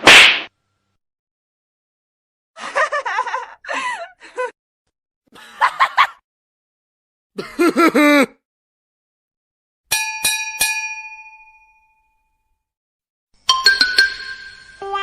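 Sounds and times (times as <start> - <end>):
bright metallic dings: 9.9 - 12.4, 13.4 - 15.0.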